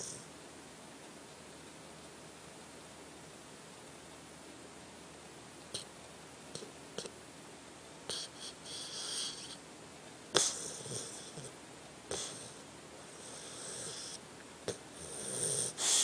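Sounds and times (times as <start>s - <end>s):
dog snoring through nose: 0.0s - 0.3s, 6.5s - 7.1s, 8.1s - 9.6s, 10.3s - 16.0s.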